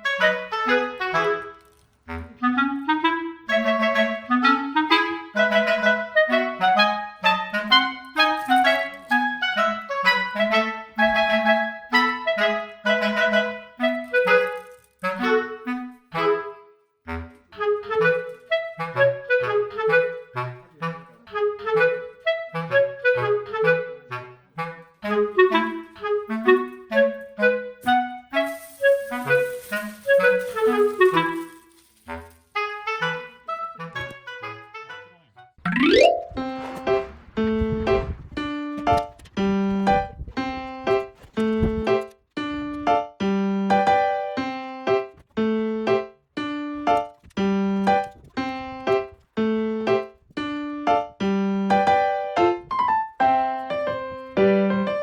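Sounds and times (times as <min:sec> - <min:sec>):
woodwind melody: 0:00.0 - 0:35.1
instrumental tune with bass line: 0:35.7 - 0:36.8.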